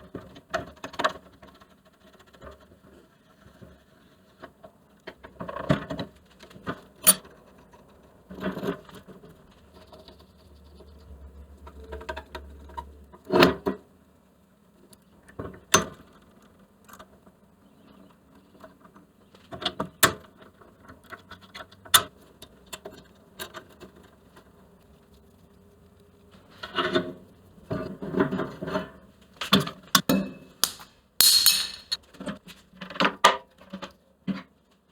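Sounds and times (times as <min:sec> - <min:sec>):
metal tools clinking and knocking: 0:30.6 - 0:32.0.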